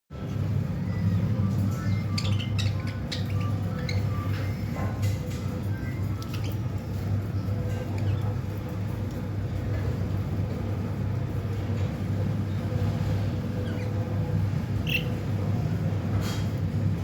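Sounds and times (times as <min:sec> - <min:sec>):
steady low hum: 0:00.1 - 0:17.0.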